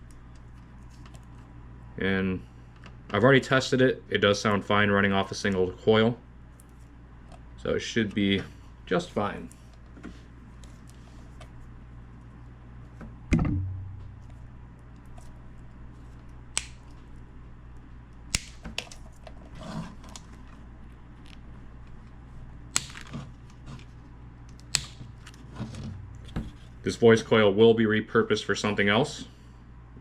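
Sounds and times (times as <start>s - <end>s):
steady low hum: 0.0s - 30.0s
low ringing knock: 13.3s - 14.2s.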